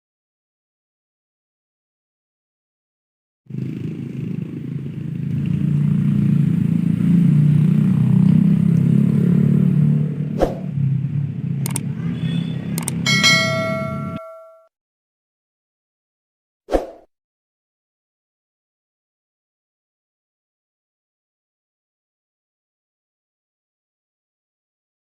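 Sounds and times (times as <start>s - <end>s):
sharp clicks: 11.6s - 11.9s, 12.8s - 13.0s
metallic ringing: 13.1s - 14.7s.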